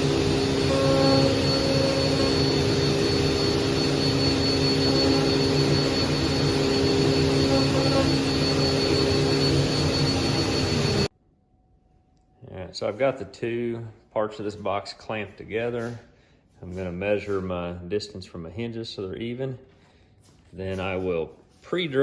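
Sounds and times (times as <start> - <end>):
machine motor whining: 0.0 - 11.1.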